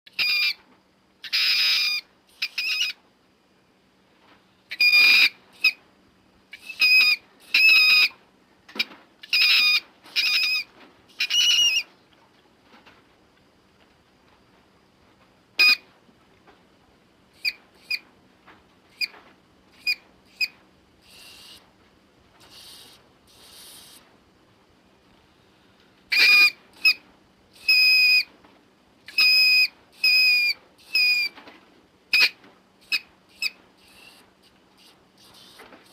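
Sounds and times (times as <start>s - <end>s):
shrill creature squeaks: 0.1s - 0.6s, 1.2s - 3.0s, 4.7s - 5.8s, 6.6s - 8.1s, 9.2s - 11.9s, 26.1s - 27.0s, 27.6s - 28.3s, 29.1s - 31.3s
breathy hisses: 21.0s - 21.6s, 22.4s - 24.0s, 33.8s - 34.2s.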